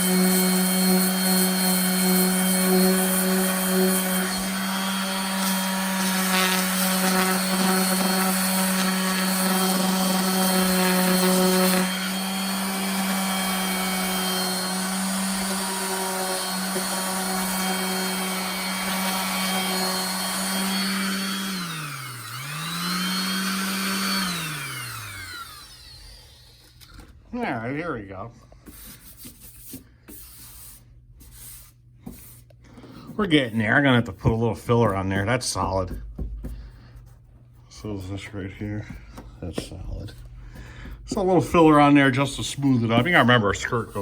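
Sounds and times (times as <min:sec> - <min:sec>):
electric power sander running: 0:00.0 - 0:26.8.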